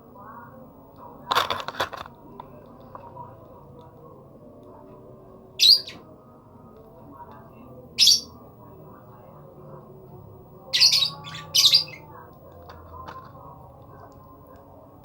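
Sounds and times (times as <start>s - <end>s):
lovebird squawking: 5.6s - 6.0s, 8.0s - 8.4s, 10.7s - 12.1s.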